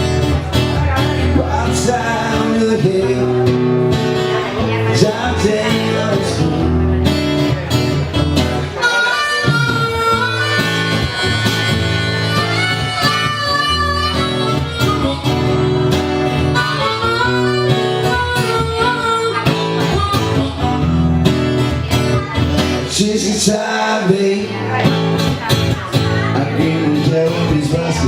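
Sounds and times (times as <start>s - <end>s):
acoustic guitar accompaniment: 0.0s - 28.0s
harmonica solo: 8.4s - 21.9s.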